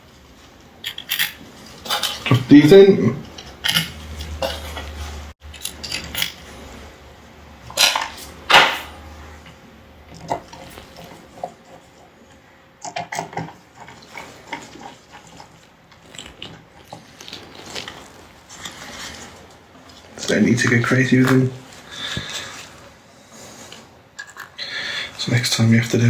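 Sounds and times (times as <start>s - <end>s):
small metal parts clinking: 0.8s - 2.4s, 5.5s - 6.4s.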